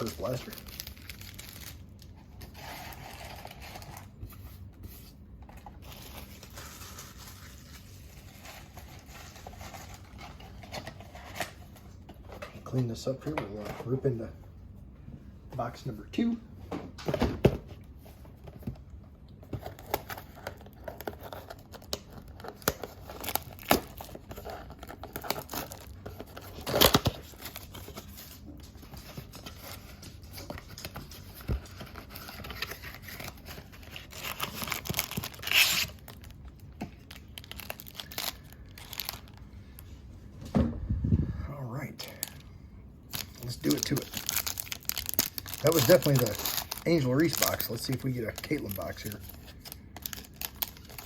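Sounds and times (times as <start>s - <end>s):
plastic ripping: 0.0s - 1.8s, 19.8s - 39.4s, 43.1s - 51.0s
plastic wrappers crinkling: 0.0s - 4.1s, 19.6s - 39.9s, 43.1s - 51.0s.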